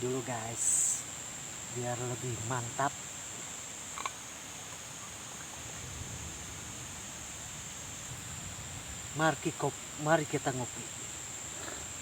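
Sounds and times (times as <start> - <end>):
faint hiss: 0.0 - 12.0
insects droning: 0.0 - 12.0.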